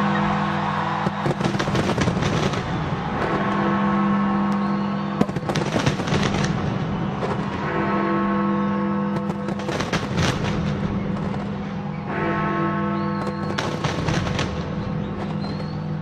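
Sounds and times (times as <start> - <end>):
fireworks crackling: 0.9 - 3.4, 5.2 - 7.6, 9.2 - 10.9, 13.2 - 14.7.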